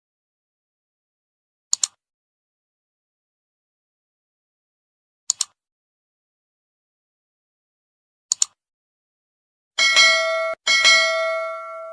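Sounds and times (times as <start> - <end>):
bright bell ding: 9.8 - 11.9.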